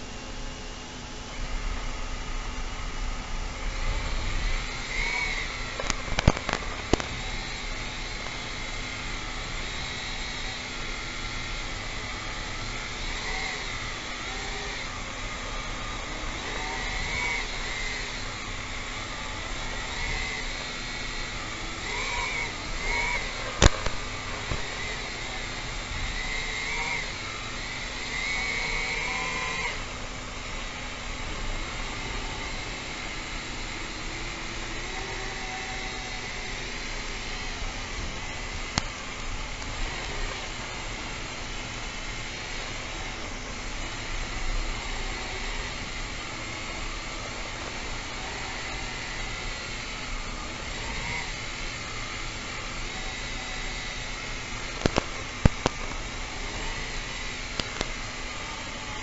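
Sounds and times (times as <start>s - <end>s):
drone motors whining: 0.0s - 59.0s
sharp clicks: 4.9s - 7.4s, 22.3s - 25.3s, 54.7s - 56.0s.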